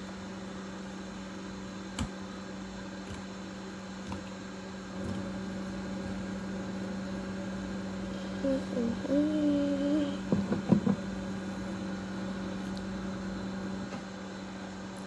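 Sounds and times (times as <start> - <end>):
steady low hum: 0.0 - 15.0
sharp click: 2.0 - 2.2.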